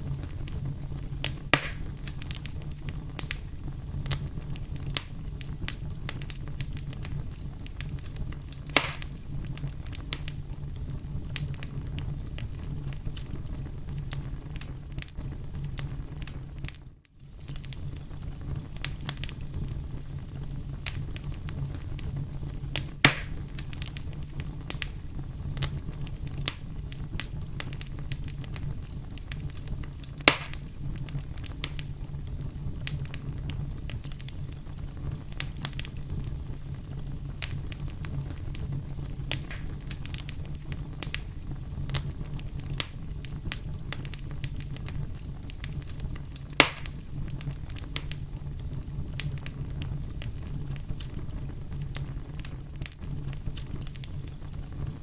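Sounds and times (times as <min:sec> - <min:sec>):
campfire rumbling: 0:00.0 - 0:55.0
fire crackling: 0:00.0 - 0:55.0
fire popping: 0:00.0 - 0:55.0.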